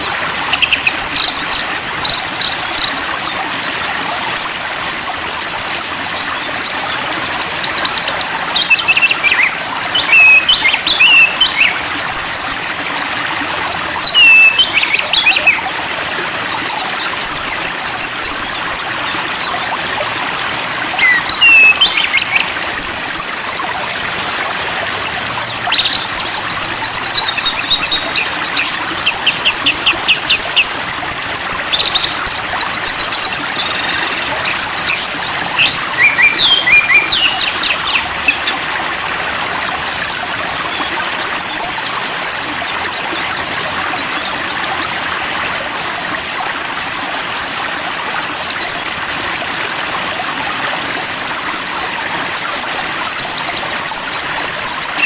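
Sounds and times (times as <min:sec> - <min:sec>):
flowing stream water: 0:00.0 - 0:55.0
songbirds trilling and chirping: 0:13.9 - 0:23.6, 0:24.8 - 0:45.0.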